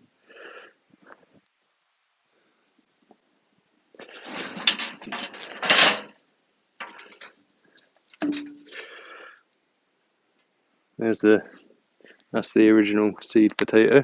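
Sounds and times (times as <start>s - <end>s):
hands rummaging through soil: 4.0s - 6.2s.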